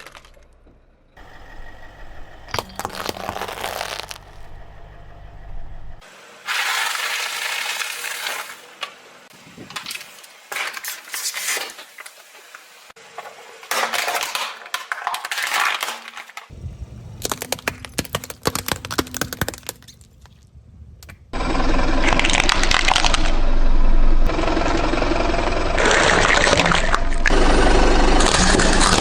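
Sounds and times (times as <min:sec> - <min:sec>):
objects crushed under car tyres: 0:00.0 - 0:00.9, 0:02.5 - 0:04.6, 0:13.7 - 0:20.5
low rumble: 0:00.0 - 0:06.0, 0:16.5 - 0:17.8, 0:20.4 - 0:27.7.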